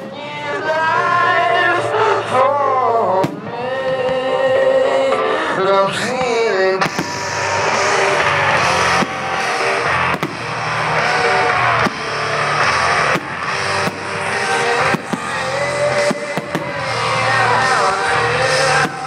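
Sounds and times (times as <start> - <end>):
loud music over sound system: 0.0 - 19.0
firework bangs: 3.2 - 4.1, 6.1 - 19.0.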